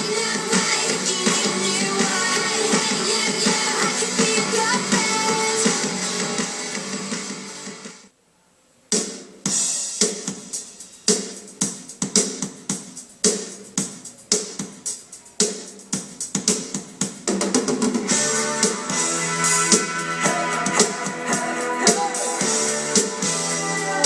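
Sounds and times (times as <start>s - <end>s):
steady drum beat: 0.0s - 8.0s, 8.9s - 24.0s
music from boombox speakers: 0.0s - 8.1s, 9.0s - 24.0s.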